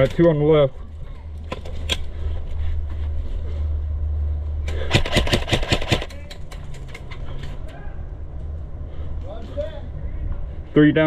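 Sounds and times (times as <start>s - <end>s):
steady low rumble: 0.0s - 5.0s
airsoft rifle rapid shots: 4.7s - 6.2s.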